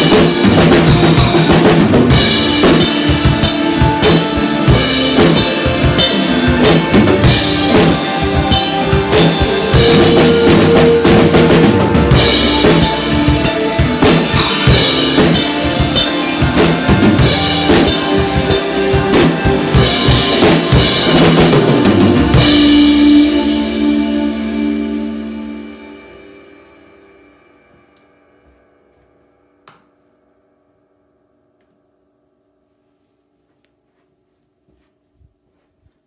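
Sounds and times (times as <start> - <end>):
drum kit playing: 0.0 - 26.5
sustained chords: 0.0 - 28.6.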